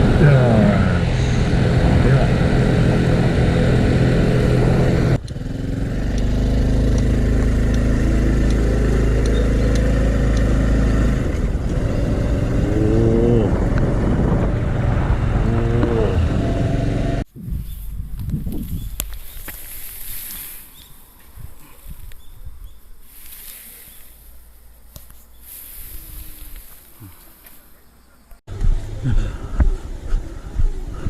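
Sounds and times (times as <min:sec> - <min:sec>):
small motorcycle engine running: 0:00.0 - 0:17.2
road and wind noise: 0:00.0 - 0:31.0.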